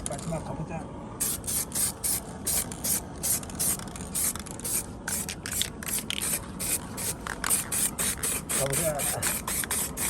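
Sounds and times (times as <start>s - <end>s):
spray gun hissing in pulses: 6.2s - 10.0s.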